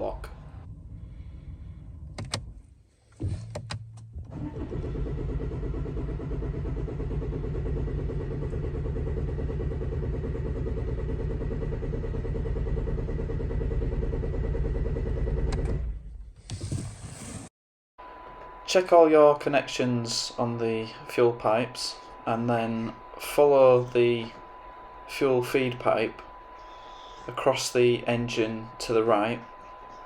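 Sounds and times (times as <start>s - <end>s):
car engine cranking on starter: 3.2s - 16.1s.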